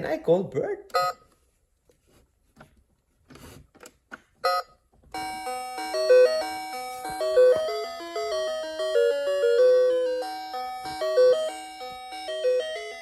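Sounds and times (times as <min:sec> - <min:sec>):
tinkly electronic chime melody: 0:05.2 - 0:13.0.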